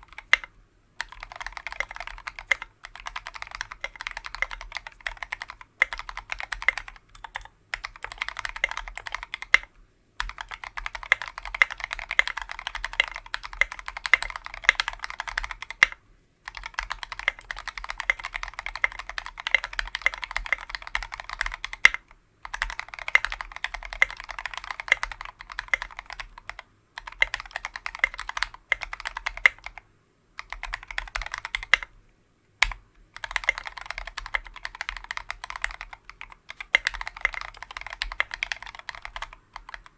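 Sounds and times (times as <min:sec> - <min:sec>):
fast typing on mechanical keyboard: 0:00.0 - 0:29.8, 0:30.4 - 0:31.9, 0:32.6 - 0:39.9.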